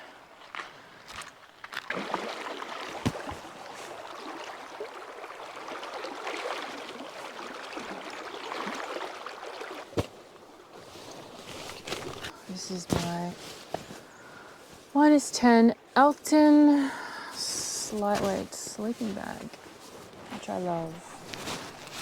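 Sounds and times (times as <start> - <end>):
nylon gear rustling and crinkling: 9.8 - 15.0, 17.3 - 22.0.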